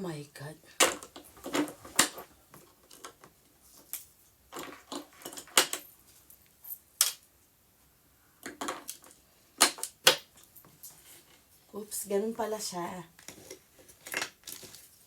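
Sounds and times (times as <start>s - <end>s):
packaging clicks and rustles: 13.2s - 15.0s.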